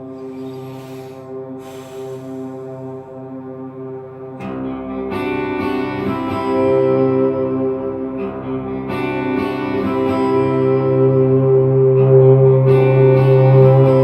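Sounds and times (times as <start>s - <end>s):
sustained held tone: 0.0s - 4.4s
guitar strumming chords: 0.0s - 14.0s.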